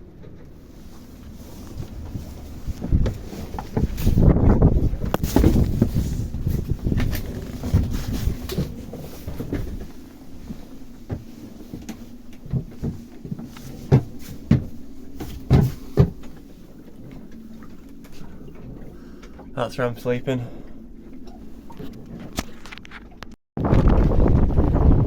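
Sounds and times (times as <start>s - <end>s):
knocks and clunks: 1.8s - 19.6s.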